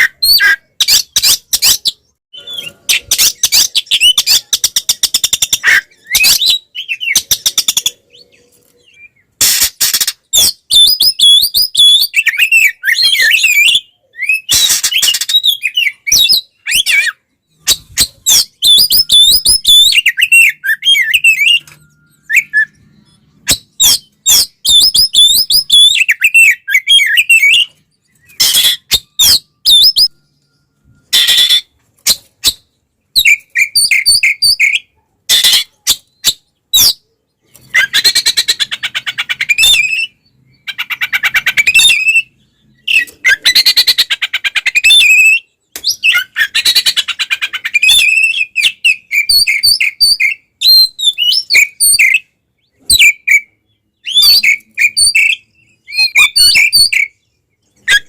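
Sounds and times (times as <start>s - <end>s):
bird harsh rapid chattering: 9.4s - 11.5s, 14.4s - 21.7s
bird singing high whistles: 10.4s - 37.0s, 53.0s - 57.2s.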